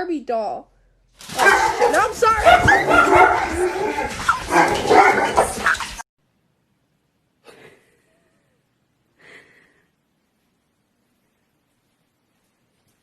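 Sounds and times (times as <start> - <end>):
woman's voice: 0.0 - 0.7.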